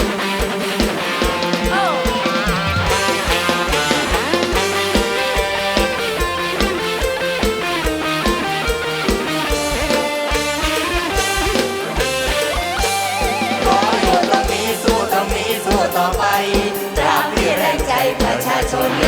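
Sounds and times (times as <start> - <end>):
bass: 0.0 - 19.0
electric guitar melody: 0.0 - 19.0.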